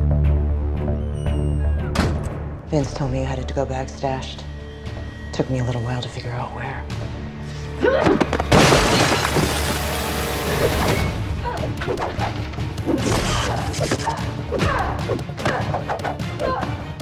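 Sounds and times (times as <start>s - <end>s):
dramatic action score music: 0.0s - 17.0s
loud shattering crash: 8.5s - 9.9s.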